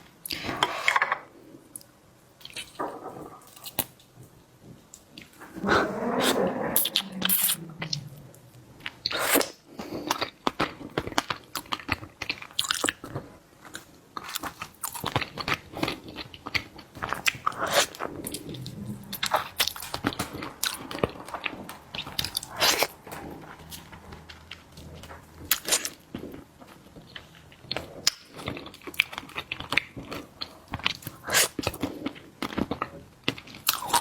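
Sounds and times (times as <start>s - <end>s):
chewing and crunching seafood: 8.8s - 34.0s.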